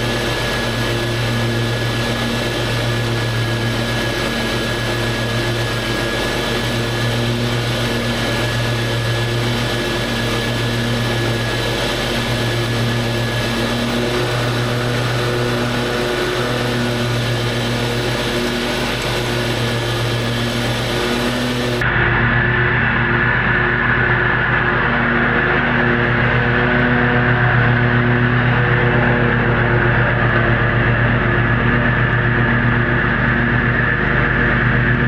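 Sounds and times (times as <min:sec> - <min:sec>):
lawn mower running: 0:00.0 - 0:35.0.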